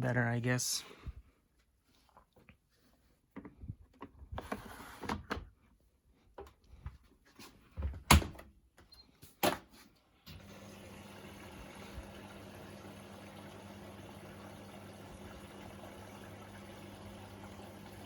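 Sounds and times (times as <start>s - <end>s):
washing machine running hum: 10.3s - 18.0s.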